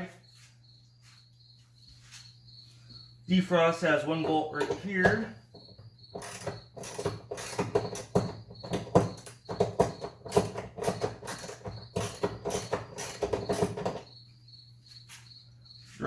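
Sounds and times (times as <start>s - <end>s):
cricket chirping: 0.0s - 16.0s
ratchet wrench clicking: 6.2s - 14.1s.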